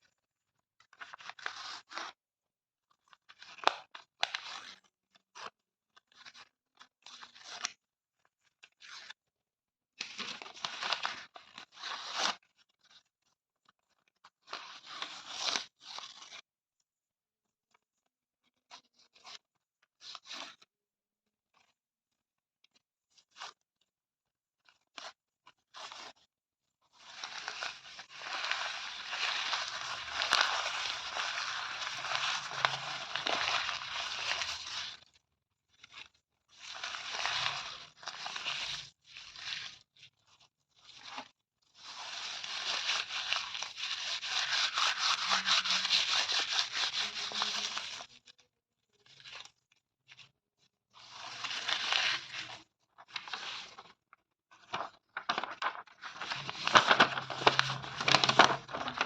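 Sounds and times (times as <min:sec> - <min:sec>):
paper tearing: 0:27.4 - 0:35.0, 0:42.4 - 0:48.0, 0:54.7 - 0:59.0.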